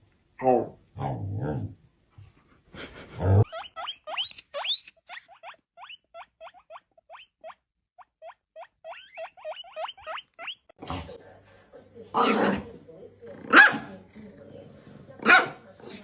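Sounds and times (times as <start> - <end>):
small animal squeaking: 3.4 - 10.8.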